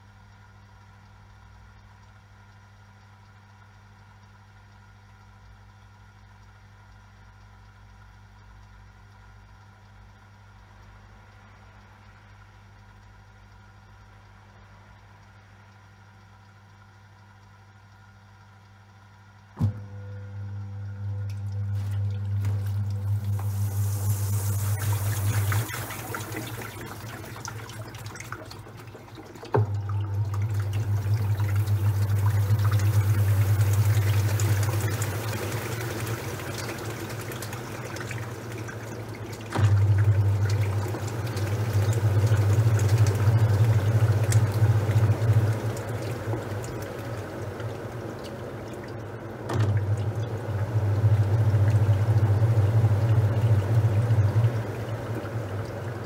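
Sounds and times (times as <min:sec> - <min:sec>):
washing machine motor humming: 0:15.9 - 0:56.0
water and towels sloshing: 0:21.4 - 0:23.5
washing machine click: 0:24.8 - 0:47.0, 0:49.4 - 0:51.0.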